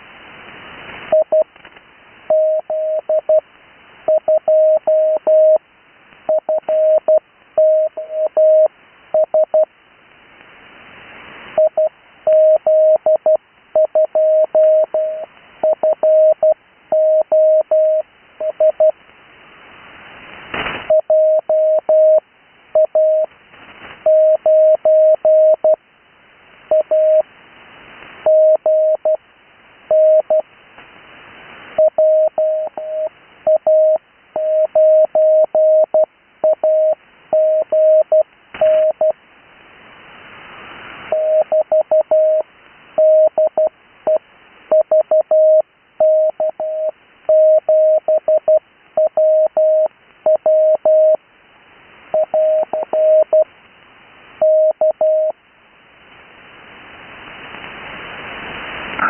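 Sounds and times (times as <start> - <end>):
sharp static crack: 0.0 - 2.3, 18.0 - 21.0, 23.1 - 24.1, 38.2 - 41.4, 56.0 - 59.0
morse code tone: 41.1 - 42.4, 52.2 - 53.4
radio band hiss: 56.7 - 59.0.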